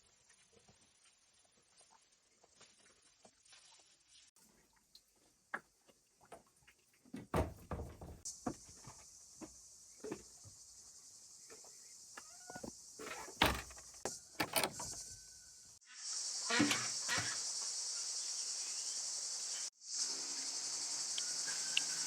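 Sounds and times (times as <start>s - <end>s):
knocks and thuds of handling objects: 7.2s - 8.6s
steady high hiss: 15.6s - 22.0s.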